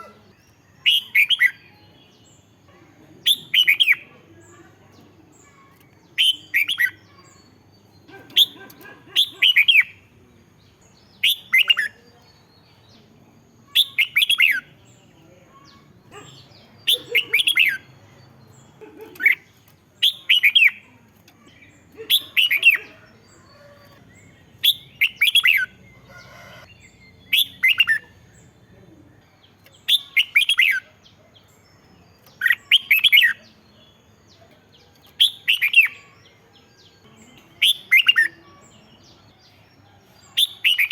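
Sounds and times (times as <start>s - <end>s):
bird singing sweeping phrases: 13.6s - 14.8s, 15.8s - 33.6s, 35.0s - 39.6s, 40.2s - 40.9s.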